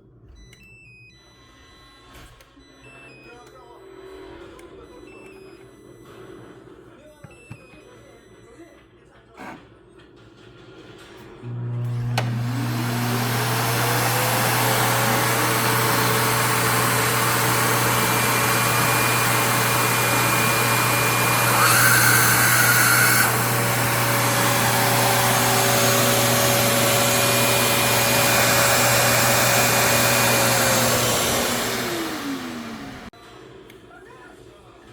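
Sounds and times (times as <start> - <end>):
cordless vacuum motor whining: 11.4 - 33.1.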